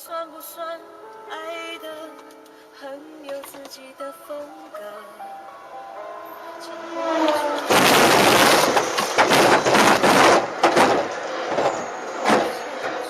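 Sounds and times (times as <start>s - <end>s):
train crashing into vehicle: 7.2s - 13.0s
wreckage crunching and clattering: 7.7s - 12.5s.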